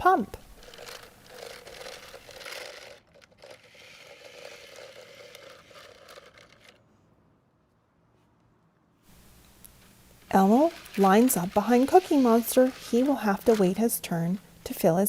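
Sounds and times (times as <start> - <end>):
toy car rolling and rattling: 0.1 - 6.8, 10.2 - 14.4.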